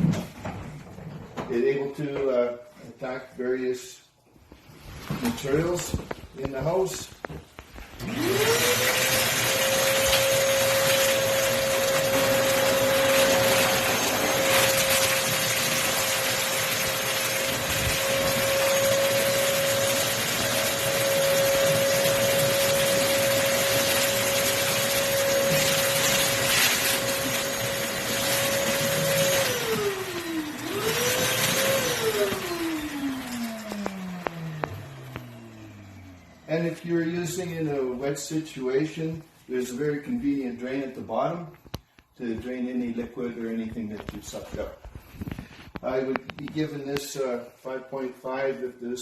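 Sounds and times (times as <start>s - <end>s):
shop vacuum motor whining: 5.2s - 37.7s.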